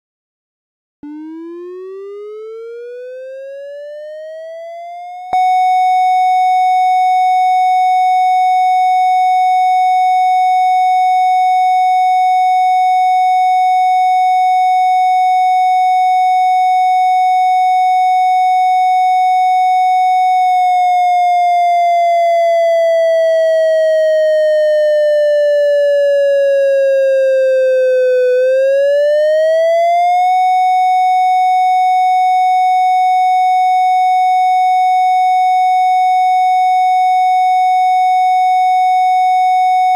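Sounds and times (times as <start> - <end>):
synthesized siren tone: 1.0 - 11.6, 19.0 - 31.8.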